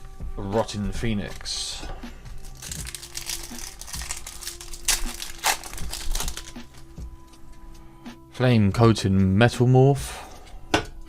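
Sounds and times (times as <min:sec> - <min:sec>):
cards rustling and crinkling: 0:02.4 - 0:06.9.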